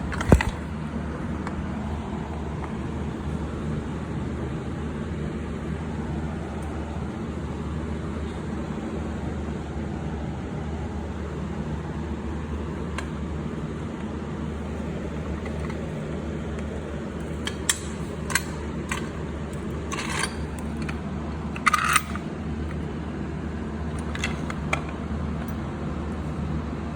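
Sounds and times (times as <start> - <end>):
low mechanical hum: 0.0 - 26.9.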